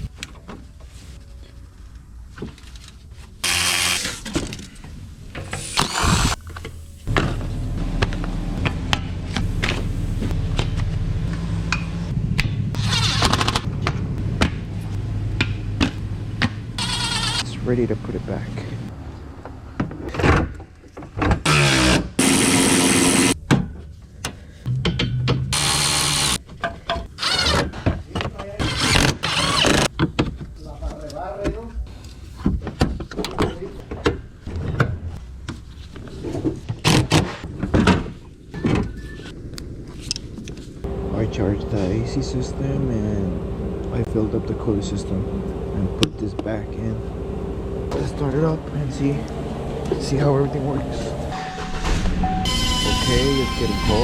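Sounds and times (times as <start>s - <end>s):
steady low hum: 4.6s - 12.8s, 40.7s - 54.0s.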